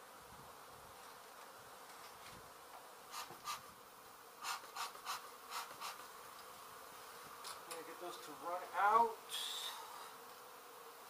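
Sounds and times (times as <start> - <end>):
bees buzzing: 0.0 - 11.0.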